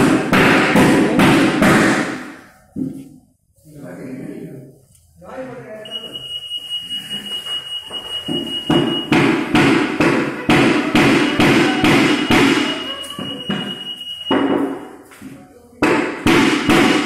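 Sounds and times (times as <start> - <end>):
high-pitched electronic beep: 5.9 - 9.2, 11.0 - 14.9
sharp knocks: 8.3 - 12.8, 15.8 - 17.0.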